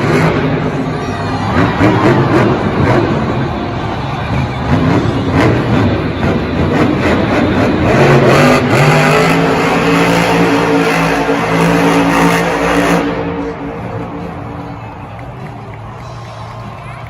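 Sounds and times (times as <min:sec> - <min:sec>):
engine revving: 0:00.0 - 0:00.8, 0:04.5 - 0:14.5
loud rough noise: 0:00.0 - 0:17.0.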